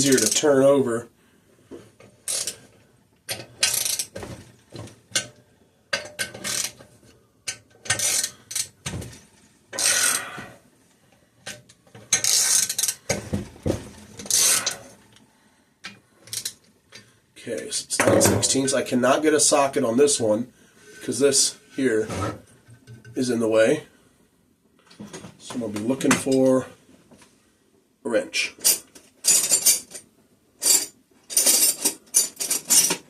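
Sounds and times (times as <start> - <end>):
ratchet wrench clicking: 2.3 - 2.6, 3.3 - 4.1, 6.4 - 6.8, 7.5 - 8.7, 9.8 - 10.3, 12.1 - 13.0, 14.2 - 14.8.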